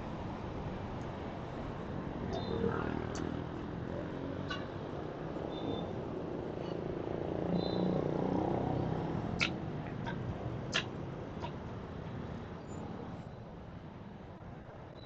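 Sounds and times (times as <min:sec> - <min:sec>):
sharp clicks: 0:09.4 - 0:09.6.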